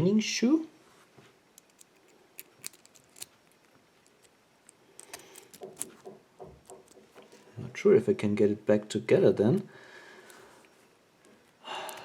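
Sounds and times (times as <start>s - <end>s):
lock cylinder metallic clicks: 1.6s - 6.0s.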